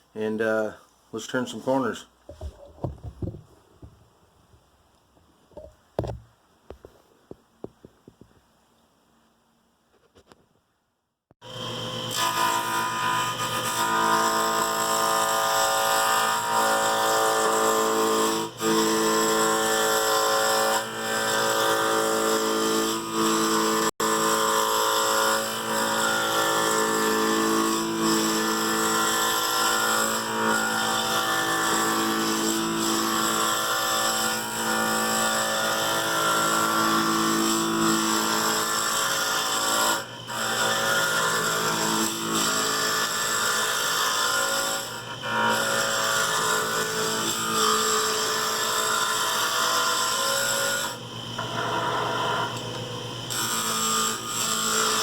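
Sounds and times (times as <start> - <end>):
wood lathe cutting: 11.5 - 52.7, 53.3 - 55.0.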